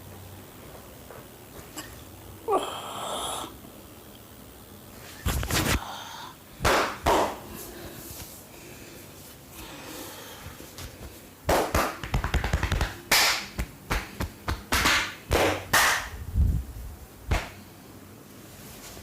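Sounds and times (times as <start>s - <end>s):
hands slapping body: 6.6s - 7.4s, 11.5s - 16.2s, 17.3s - 17.6s
hands tapping body: 11.5s - 16.1s.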